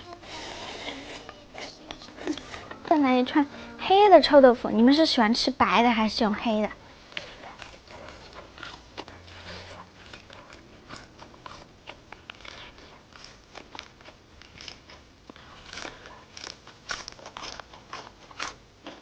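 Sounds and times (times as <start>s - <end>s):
biting and chewing: 6.6s - 19.0s.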